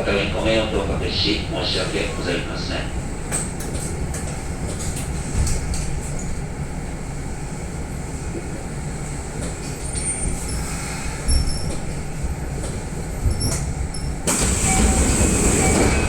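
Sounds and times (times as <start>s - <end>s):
train rumbling: 0.0s - 16.0s.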